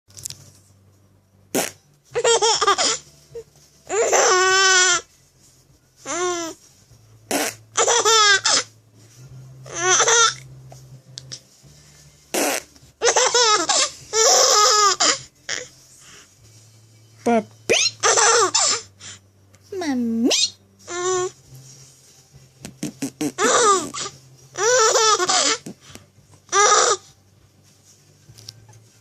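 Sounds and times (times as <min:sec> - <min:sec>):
fart sounds: 0:01.5 - 0:01.8, 0:07.3 - 0:07.7, 0:12.3 - 0:12.8, 0:22.6 - 0:24.0
baby laughing: 0:02.2 - 0:03.0, 0:03.9 - 0:05.0, 0:07.4 - 0:08.7, 0:09.7 - 0:10.4, 0:13.0 - 0:15.2, 0:17.7 - 0:18.9, 0:22.8 - 0:25.7.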